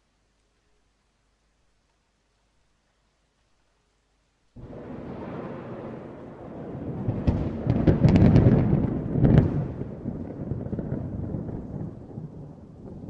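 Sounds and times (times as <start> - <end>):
thunder rumbling and cracking: 4.6 - 13.0.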